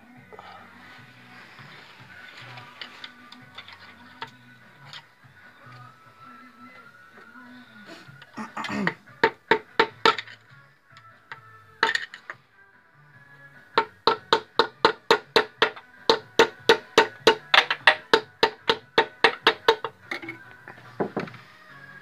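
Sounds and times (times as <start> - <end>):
hammer striking metal: 13.8 - 19.9.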